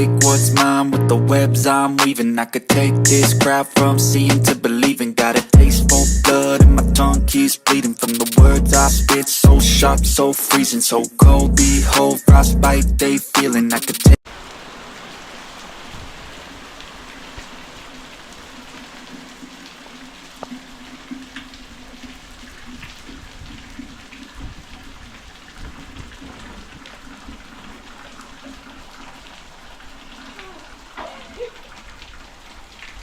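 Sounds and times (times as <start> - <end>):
rain falling: 14.2 - 33.0.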